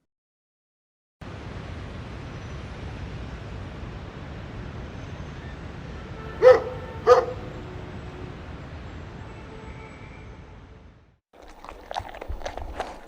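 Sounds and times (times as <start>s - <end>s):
dog barking: 6.4s - 7.5s.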